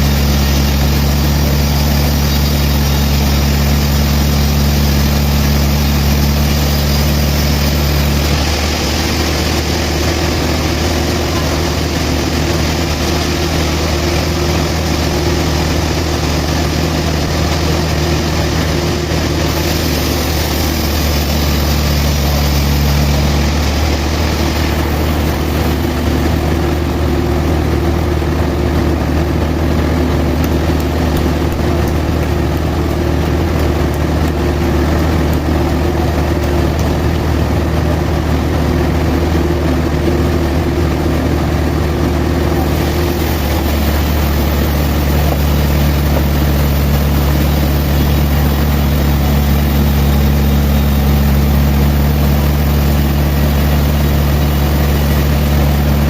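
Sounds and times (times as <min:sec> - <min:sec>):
machinery hiss: 0:00.0 - 0:27.3, 0:42.3 - 0:56.0
sawmill engine drone: 0:00.0 - 0:56.0.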